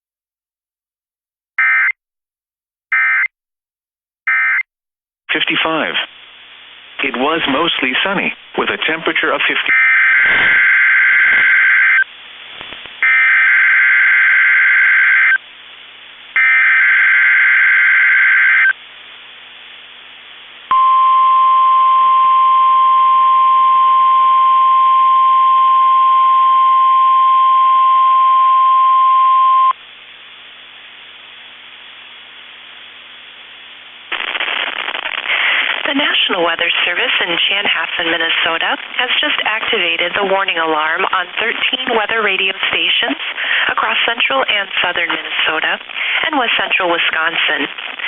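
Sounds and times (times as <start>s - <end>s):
steady warning alarm tone: 9.7s - 12.0s.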